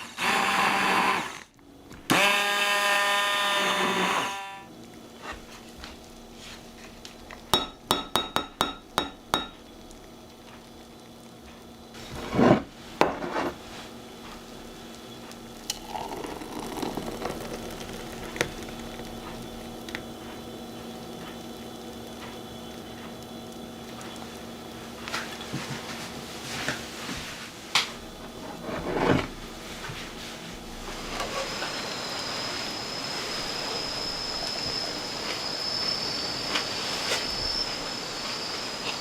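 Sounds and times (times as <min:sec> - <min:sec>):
utensil clinking dish: 0:07.5 - 0:09.6.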